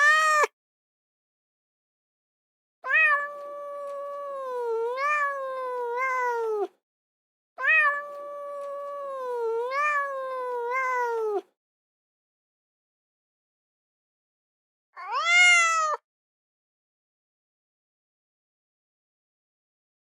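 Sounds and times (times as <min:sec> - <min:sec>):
cat meowing: 0:00.0 - 0:00.5, 0:02.8 - 0:06.8, 0:07.6 - 0:11.5, 0:15.0 - 0:16.0.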